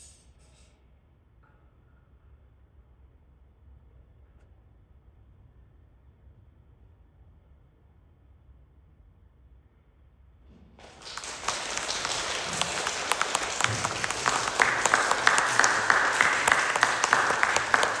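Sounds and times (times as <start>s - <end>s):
audience applause: 10.8s - 18.0s.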